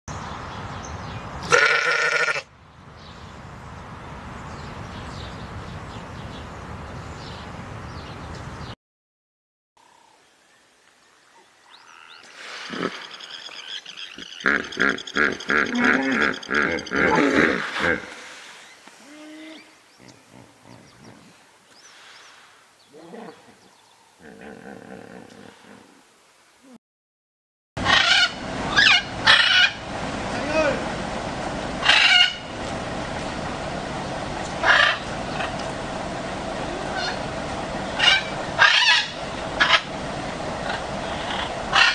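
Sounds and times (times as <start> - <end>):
background hiss: 9.8 - 14.6, 15.4 - 26.8
animal call: 11.7 - 18.3, 36.8 - 37.2, 38.0 - 39.9
faint animal cries: 19.0 - 19.8.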